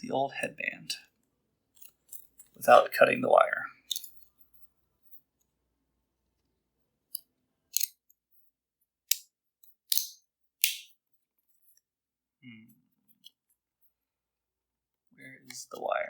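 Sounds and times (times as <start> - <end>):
scissors snipping: 9.1 - 10.9.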